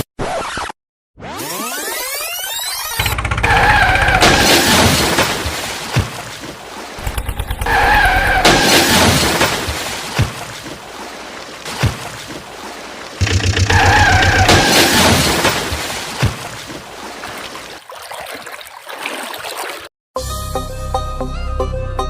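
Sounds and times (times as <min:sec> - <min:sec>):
vehicle engine: 0:07.0 - 0:08.5.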